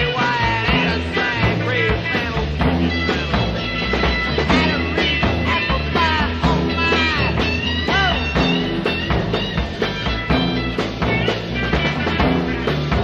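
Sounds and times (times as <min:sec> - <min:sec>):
psychedelic rock band playing: 0:00.0 - 0:13.0.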